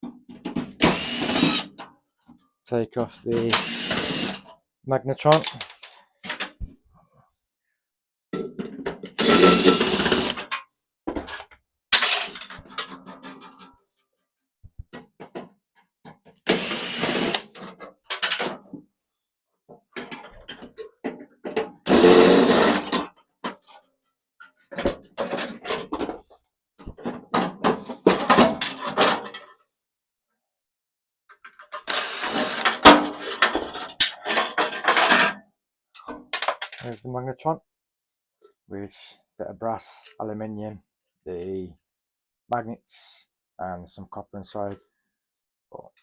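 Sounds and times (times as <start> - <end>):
tool mechanical noise bursts: 0.8 - 1.7, 3.5 - 4.4, 16.5 - 17.4, 21.9 - 22.9
metal parts clinking: 5.3 - 6.0, 12.0 - 13.7.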